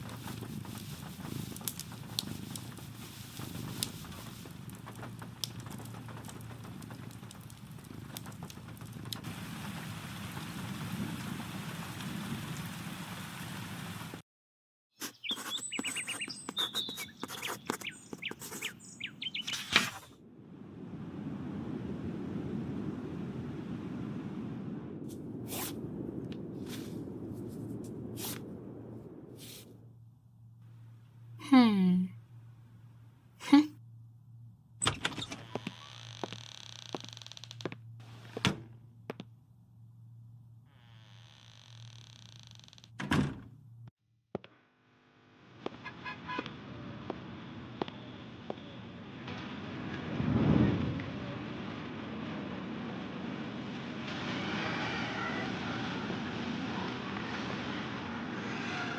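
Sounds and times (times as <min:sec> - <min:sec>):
rain patter: 0:00.0 - 0:14.2, 0:17.0 - 0:19.5, 0:20.2 - 0:33.6, 0:35.6 - 0:39.3, 0:46.5 - 0:58.6
wood fire crackling: 0:00.0 - 0:14.2, 0:15.2 - 0:31.4, 0:34.8 - 0:43.0.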